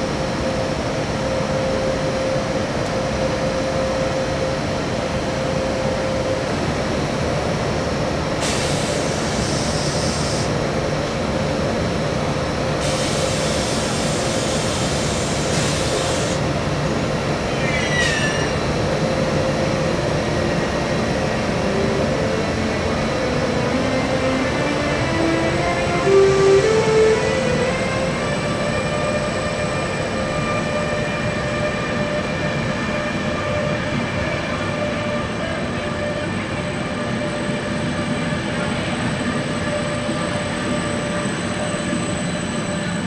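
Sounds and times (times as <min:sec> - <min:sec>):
electric train rumbling: 0:00.0 - 0:43.0
rising motor whine: 0:20.1 - 0:33.2.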